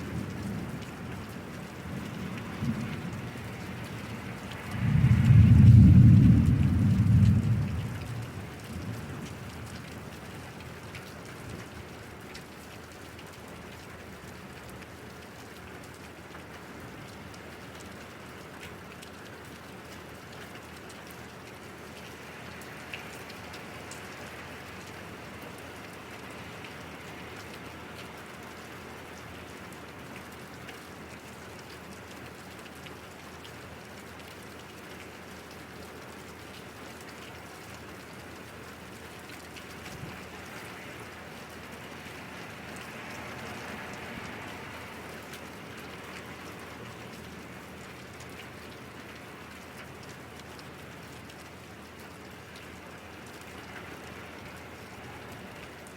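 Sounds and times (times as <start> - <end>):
low thunder rumble: 0.0 - 10.0
raindrops ticking: 0.0 - 55.9
steady rain falling: 0.0 - 55.9.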